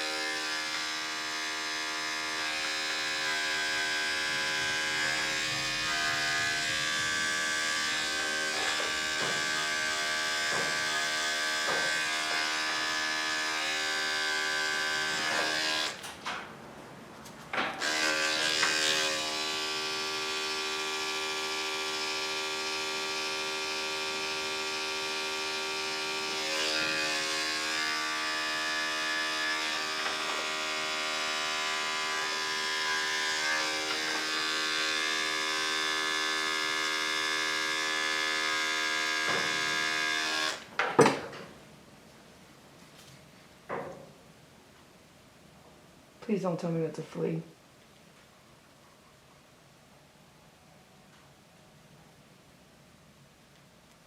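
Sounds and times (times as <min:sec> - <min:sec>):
electric clippers buzzing: 0:00.0 - 0:16.0, 0:17.8 - 0:40.7.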